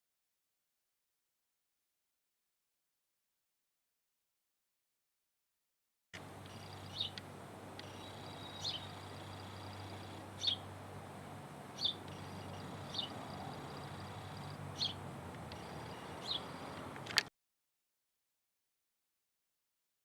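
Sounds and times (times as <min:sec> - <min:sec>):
low steady hum: 0:06.2 - 0:17.2
bird short high chirps: 0:06.5 - 0:07.2, 0:07.8 - 0:10.7, 0:11.8 - 0:16.8.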